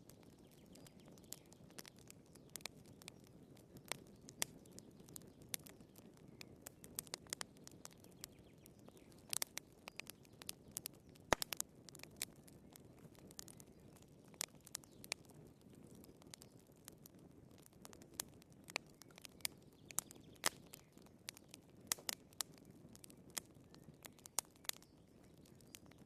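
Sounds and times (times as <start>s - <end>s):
fire crackling and popping: 0.0s - 26.0s.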